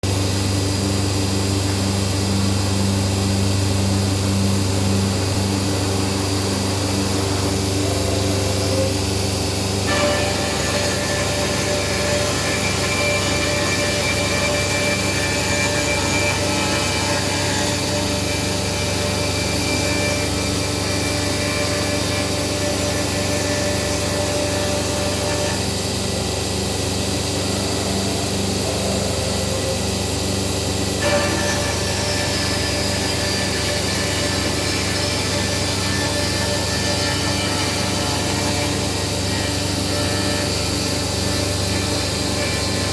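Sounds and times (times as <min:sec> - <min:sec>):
high machine whines: 0:00.0 - 0:42.9
woodworking machine machining wood: 0:00.1 - 0:42.9.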